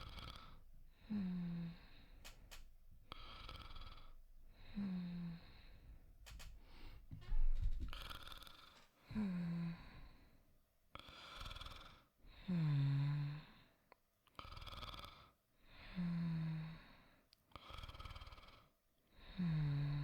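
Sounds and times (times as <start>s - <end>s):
soft snoring: 0.0s - 10.2s, 14.4s - 16.9s, 17.5s - 20.0s.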